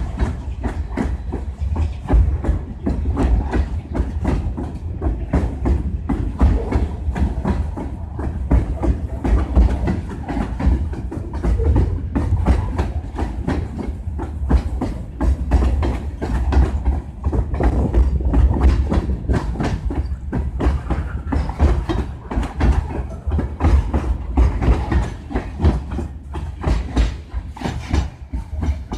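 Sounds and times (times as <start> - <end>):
low train rumble: 0.0 - 28.9
train wheels clacking over rail joints: 0.0 - 28.9.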